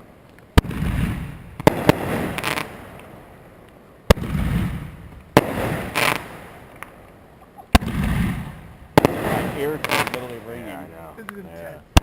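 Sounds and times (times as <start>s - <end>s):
firework crackling bursts: 0.0s - 12.0s
firework bangs with echo: 0.5s - 3.2s, 4.1s - 7.0s, 7.7s - 10.9s.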